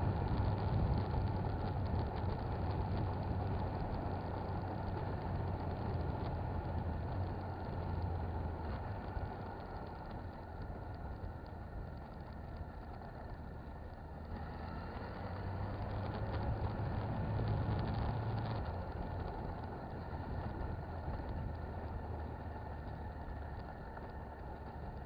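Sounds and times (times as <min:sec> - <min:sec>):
motorcycle engine running: 0:00.0 - 0:25.0
road and wind noise: 0:00.0 - 0:25.0.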